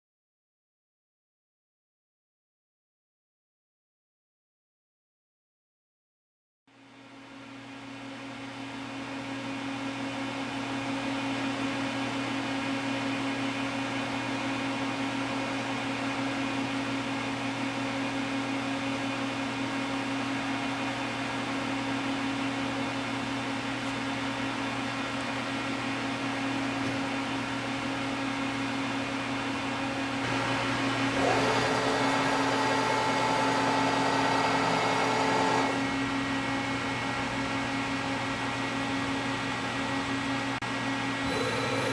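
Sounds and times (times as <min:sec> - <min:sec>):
lathe machine hum: 0:23.6 - 0:39.7, 0:41.0 - 0:41.9
high machine whine: 0:24.3 - 0:41.9.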